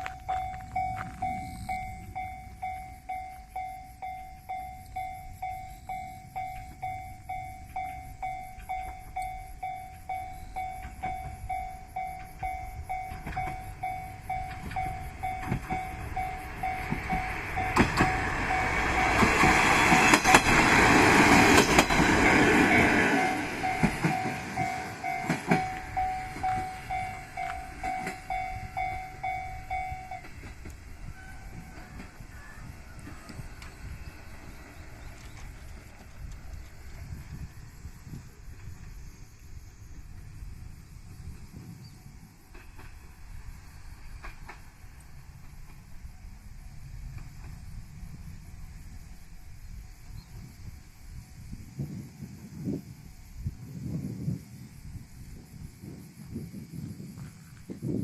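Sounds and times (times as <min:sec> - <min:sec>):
level crossing bell ringing: 0:00.0 - 0:19.3, 0:22.7 - 0:30.3
wheels clicking over rail joints: 0:00.0 - 0:37.6, 0:42.4 - 0:46.1
train passing: 0:00.0 - 0:53.9.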